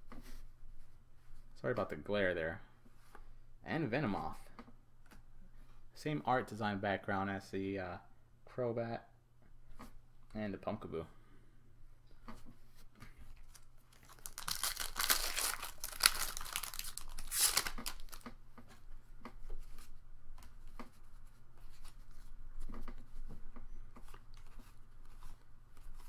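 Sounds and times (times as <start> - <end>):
foil wrapper tearing and crinkling: 13.4 - 18.4.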